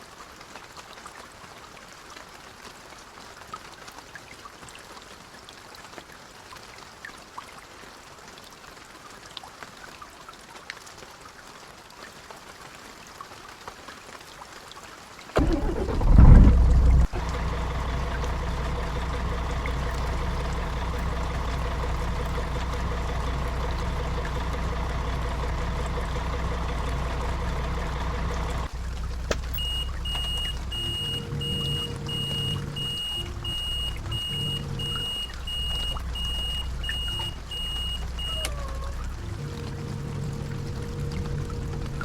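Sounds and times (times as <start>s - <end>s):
coach engine humming: 15.4s - 42.0s
high electronic beep: 29.6s - 38.5s.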